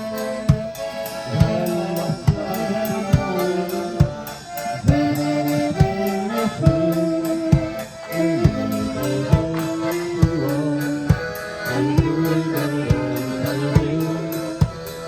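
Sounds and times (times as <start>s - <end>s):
accordion melody: 0.0s - 15.0s
drum kit beat: 0.0s - 15.0s.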